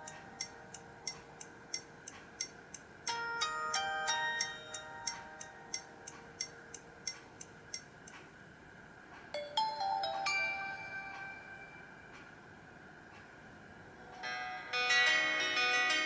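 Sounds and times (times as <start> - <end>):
synthesized ringtone tune: 3.1 - 5.4, 9.4 - 11.9
bright chiming notes: 3.1 - 5.8, 9.4 - 12.0.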